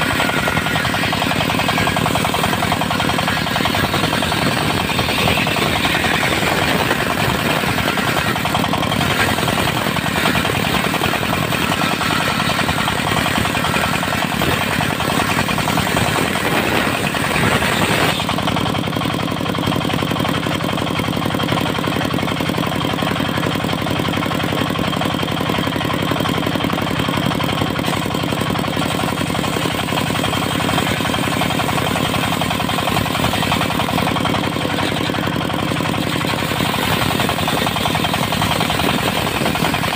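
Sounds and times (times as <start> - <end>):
circular saw blade cutting wood: 0.0 - 19.1, 27.2 - 39.9
diesel engine running: 0.0 - 39.9.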